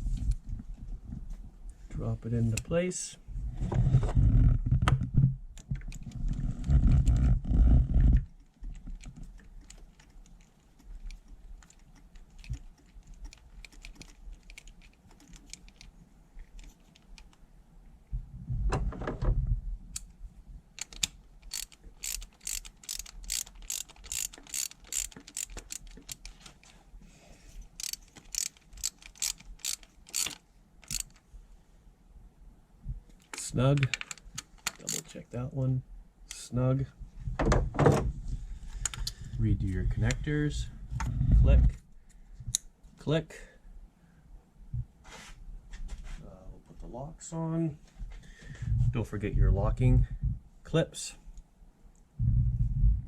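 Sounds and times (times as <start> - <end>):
ratchet wrench clicking: 20.8 - 26.4, 27.8 - 31.2, 33.3 - 35.1.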